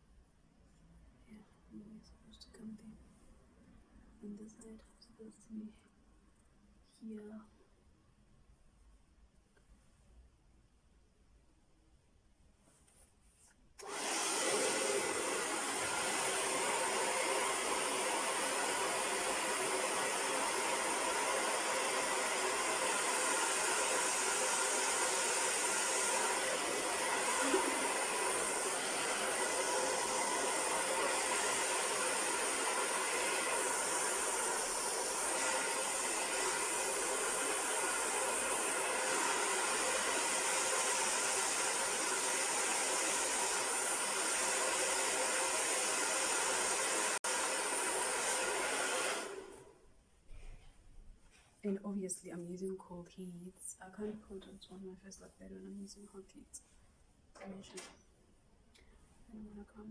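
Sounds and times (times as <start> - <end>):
hair dryer blowing: 13.8 - 49.8.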